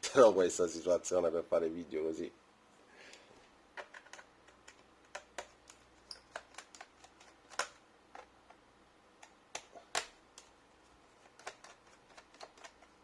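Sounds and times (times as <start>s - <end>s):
hands and tools tapping laptop casing: 3.8s - 8.6s, 11.3s - 13.0s.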